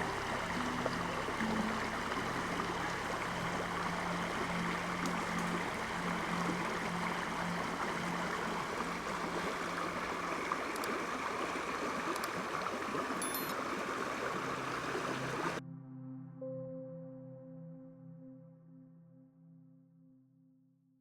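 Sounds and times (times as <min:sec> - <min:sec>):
creek water flowing over rocks: 0:00.0 - 0:15.6.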